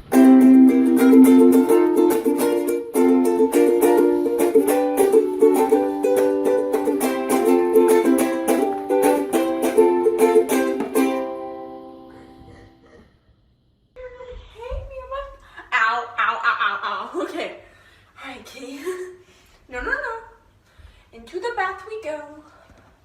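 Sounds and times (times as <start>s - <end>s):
plucked string music: 0.0s - 12.8s.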